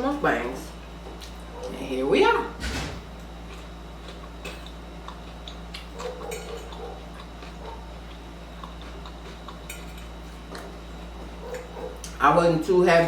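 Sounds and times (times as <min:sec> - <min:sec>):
low electrical hum: 0:00.0 - 0:13.0
chewing crunches and mouth clicks: 0:00.8 - 0:01.8, 0:03.1 - 0:12.2.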